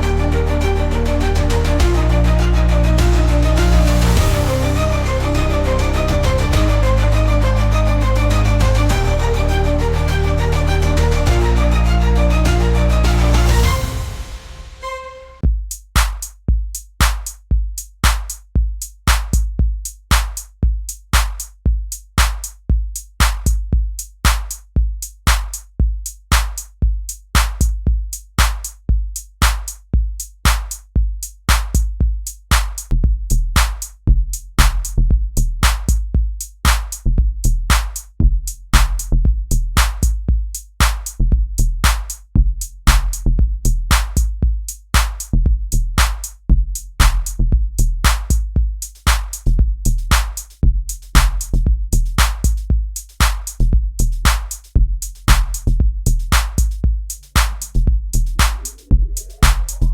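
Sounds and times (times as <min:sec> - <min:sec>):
electronic drum-machine beat: 0:00.0 - 0:05.2, 0:11.2 - 0:59.9
electronic music: 0:00.0 - 0:15.4, 0:57.4 - 0:59.9
deep bass kicks: 0:01.4 - 0:09.8, 0:32.9 - 0:36.3, 0:37.0 - 0:40.4, 0:41.2 - 0:44.6, 0:45.3 - 0:48.8, 0:49.5 - 0:52.9, 0:53.6 - 0:57.0, 0:57.8 - 0:59.9
snare-like hits: 0:16.0 - 0:16.2, 0:17.0 - 0:17.3, 0:18.0 - 0:18.3, 0:19.1 - 0:19.4, 0:20.1 - 0:20.4, 0:21.2 - 0:21.4, 0:22.2 - 0:22.4, 0:23.2 - 0:23.5, 0:24.2 - 0:24.6, 0:25.3 - 0:25.6, 0:26.3 - 0:26.6, 0:27.4 - 0:27.6, 0:28.4 - 0:28.7, 0:29.4 - 0:29.7, 0:30.5 - 0:30.8, 0:31.5 - 0:31.8, 0:32.5 - 0:32.9, 0:33.6 - 0:33.8, 0:34.6 - 0:34.9, 0:35.6 - 0:36.0, 0:36.7 - 0:37.0, 0:37.7 - 0:38.0, 0:38.8 - 0:39.1, 0:39.8 - 0:40.1, 0:40.8 - 0:41.2, 0:41.8 - 0:42.2, 0:42.9 - 0:43.2, 0:43.9 - 0:44.2, 0:45.0 - 0:45.3, 0:46.0 - 0:46.3, 0:47.0 - 0:47.4, 0:48.0 - 0:48.4, 0:49.1 - 0:49.4, 0:50.1 - 0:50.6, 0:51.2 - 0:51.5, 0:52.2 - 0:52.6, 0:53.2 - 0:53.6, 0:54.2 - 0:54.7, 0:55.3 - 0:55.6, 0:56.3 - 0:56.8, 0:57.4 - 0:57.8, 0:58.4 - 0:58.8, 0:59.4 - 0:59.8.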